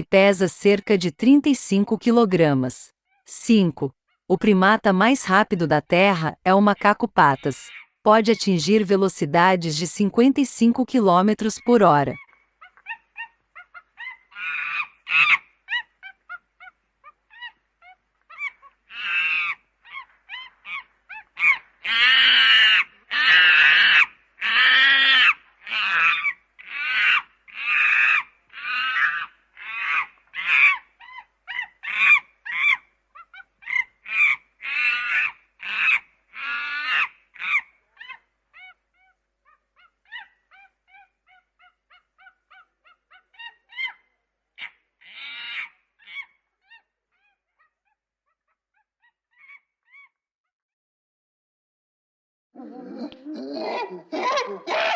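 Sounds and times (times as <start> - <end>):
monkeys calling: 6.7 - 8.6, 11.4 - 39.2, 39.8 - 44.0, 44.6 - 47.4, 52.6 - 54.9.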